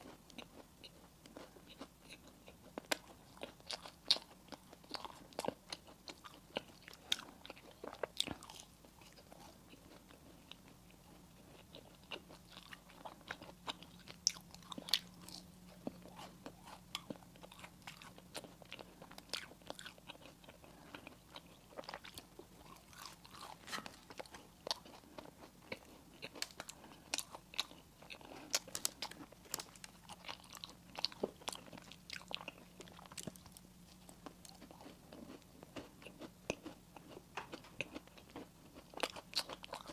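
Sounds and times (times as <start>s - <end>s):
chewing: 0.0s - 39.9s
crunching bites of pastry: 11.6s - 33.6s.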